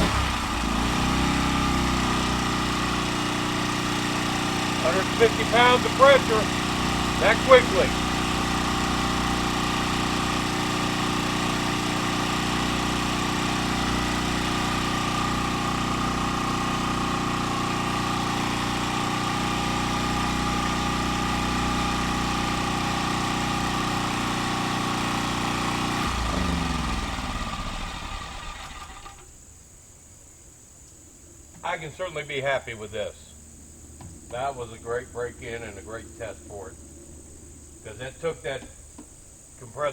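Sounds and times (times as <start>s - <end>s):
air compressor pumping: 0.0s - 29.3s
portable generator running: 0.0s - 29.4s.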